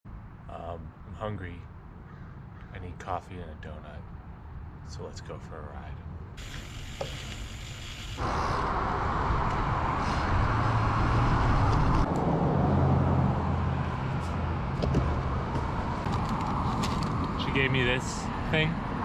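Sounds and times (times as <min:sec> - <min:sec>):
road noise hiss: 0:04.1 - 0:12.2, 0:13.3 - 0:19.0
low engine hum: 0:08.2 - 0:17.5.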